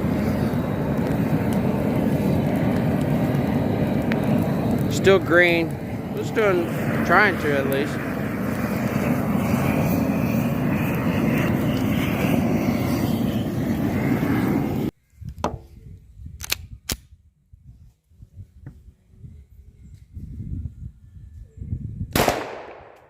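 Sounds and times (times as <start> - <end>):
blowtorch burning: 0.0 - 15.0.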